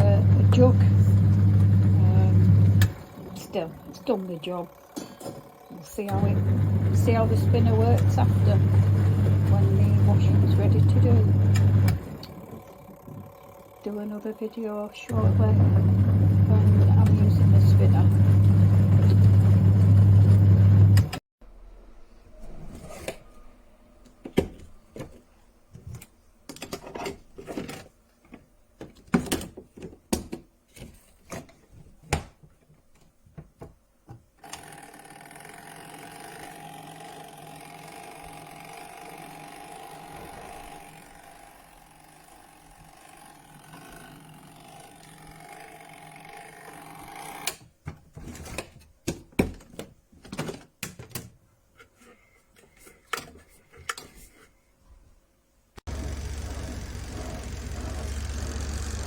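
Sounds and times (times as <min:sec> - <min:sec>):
washing machine motor humming: 0:00.0 - 0:21.2, 0:34.4 - 0:47.6, 0:55.9 - 0:59.0.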